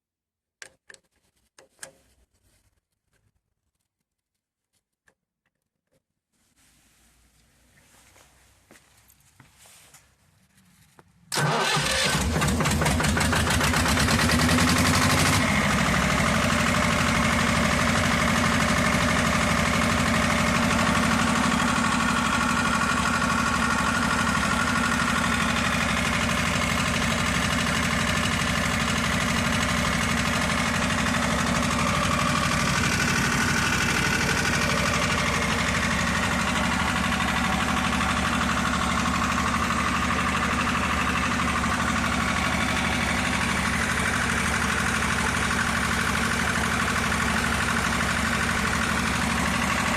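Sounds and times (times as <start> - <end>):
diesel generator engine starting: 11.3 - 49.9.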